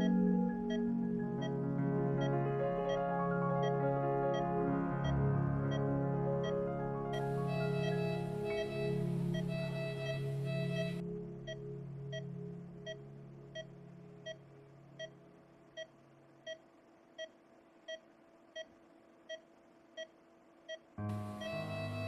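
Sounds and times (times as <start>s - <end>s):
organ music: 0.0s - 12.6s, 21.0s - 22.0s
soft held music chord: 0.0s - 15.6s, 21.0s - 22.0s
heart monitor beeping: 7.2s - 14.4s, 15.0s - 16.6s, 17.2s - 22.0s.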